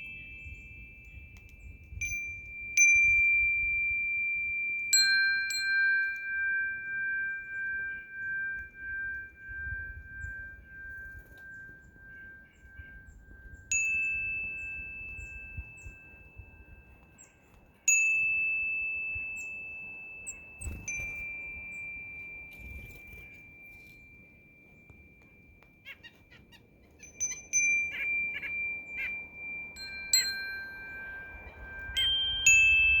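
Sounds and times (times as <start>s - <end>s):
small birds chirping: 0.0s - 2.1s, 6.4s - 18.0s, 19.2s - 33.0s
metal wind chime ringing: 0.0s - 33.0s.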